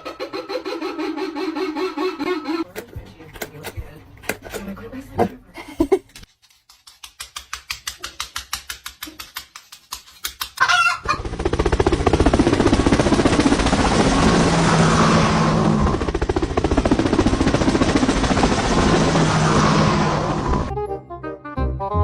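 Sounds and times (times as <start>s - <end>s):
chicken clucking: 10.6s - 11.2s.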